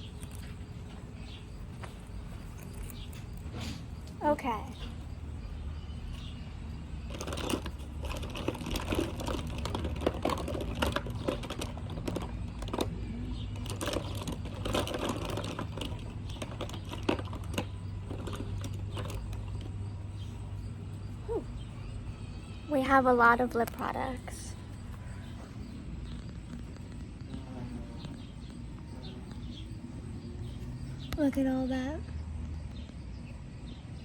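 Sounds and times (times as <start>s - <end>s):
plastic tubes clicking together: 7.1s - 19.8s.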